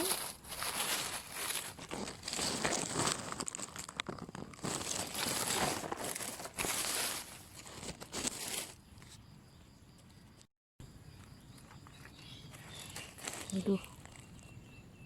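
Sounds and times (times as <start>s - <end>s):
dry material crinkling and rustling: 0.0s - 8.8s, 12.6s - 14.4s.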